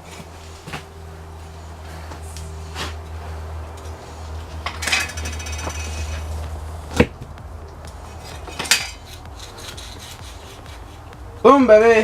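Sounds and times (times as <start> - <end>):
steady low hum: 0.0 - 12.0
metallic clattering and ringing: 4.5 - 7.0, 8.0 - 10.8.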